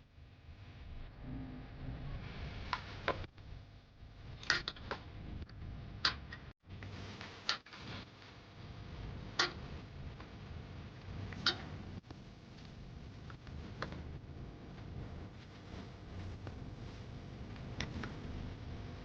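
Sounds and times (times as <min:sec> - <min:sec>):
low rumble: 0:00.2 - 0:04.4, 0:08.6 - 0:19.0.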